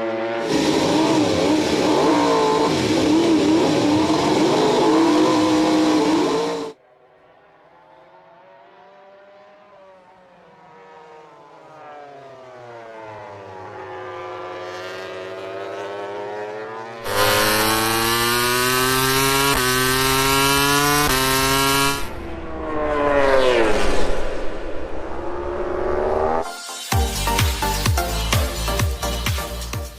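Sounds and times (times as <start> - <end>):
motorcycle engine at racing revs: 0.0 - 6.8, 7.9 - 24.1.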